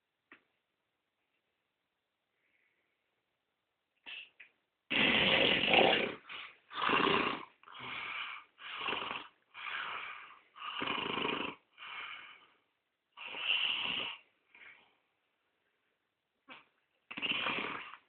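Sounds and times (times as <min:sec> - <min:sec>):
man snoring heavily: 0:04.9 - 0:12.0, 0:17.1 - 0:17.9.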